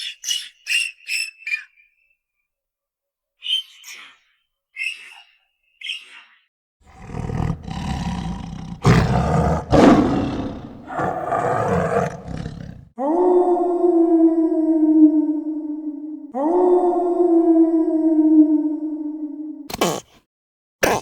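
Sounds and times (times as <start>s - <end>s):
big cat roaring: 6.8s - 14.2s.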